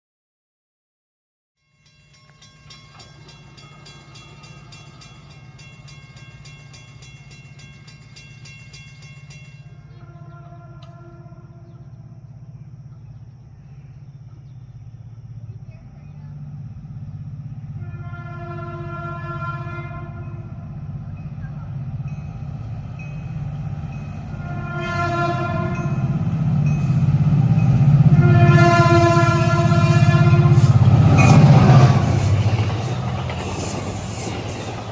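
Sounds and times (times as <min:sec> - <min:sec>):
crossing warning bell ringing: 0:01.6 - 0:11.0, 0:18.1 - 0:33.8
low train rumble: 0:01.6 - 0:34.9
locomotive horn: 0:09.8 - 0:12.0, 0:17.7 - 0:20.8, 0:24.3 - 0:26.2, 0:27.8 - 0:32.3.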